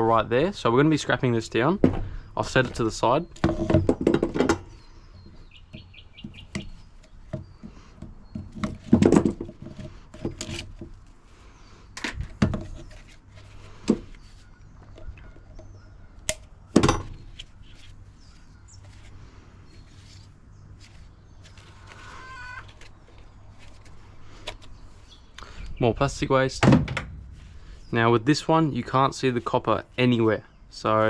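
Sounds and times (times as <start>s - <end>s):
heavy thuds: 1.8s - 2.3s
metal parts knocking and clunking: 1.8s - 4.7s, 6.2s - 11.0s
bird chirps: 4.6s - 8.6s.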